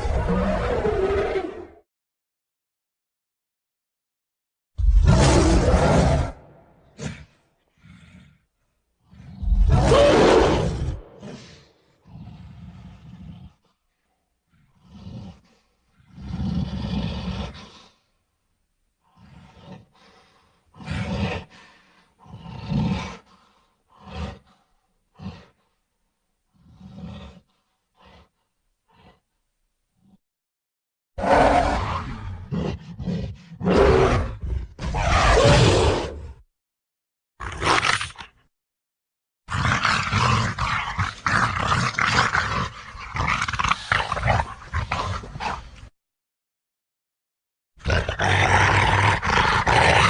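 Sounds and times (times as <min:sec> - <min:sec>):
gorilla roaring and grunting: 0:00.0 - 0:01.8, 0:04.8 - 0:08.2, 0:09.1 - 0:13.6, 0:20.8 - 0:21.6, 0:31.2 - 0:36.4, 0:39.5 - 0:45.7, 0:47.8 - 0:50.0.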